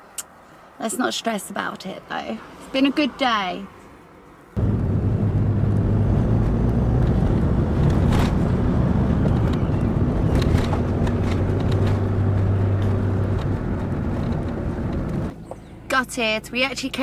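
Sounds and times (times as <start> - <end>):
road noise: 0.0 - 17.0
van engine drone: 4.6 - 15.9.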